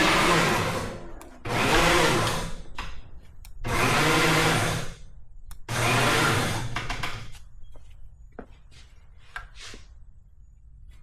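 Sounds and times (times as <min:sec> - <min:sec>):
electric hoist motor running: 0:00.0 - 0:07.2.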